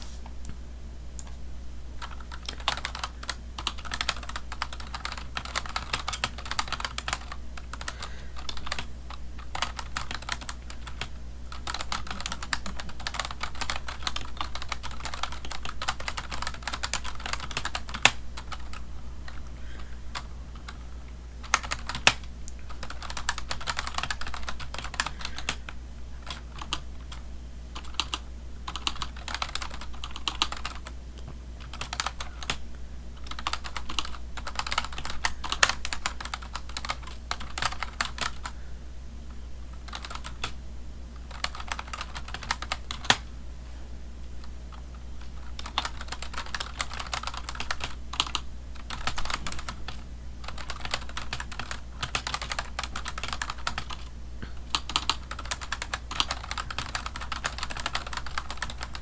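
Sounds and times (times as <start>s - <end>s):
computer keyboard typing: 2.0s - 32.6s, 33.2s - 38.6s, 39.7s - 40.6s, 41.2s - 43.3s, 44.4s - 59.0s.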